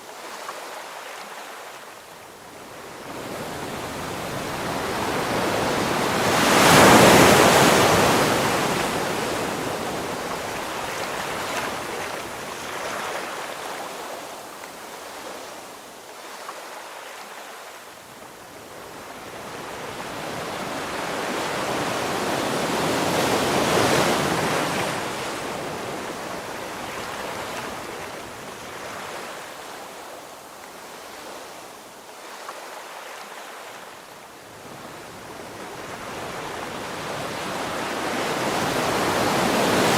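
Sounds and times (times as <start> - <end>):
ocean waves crashing: 3.1 - 13.6, 35.8 - 39.9.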